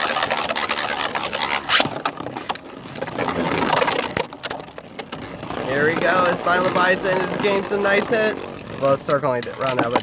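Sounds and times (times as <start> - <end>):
plastic spinning tops clicking: 0.0 - 10.0.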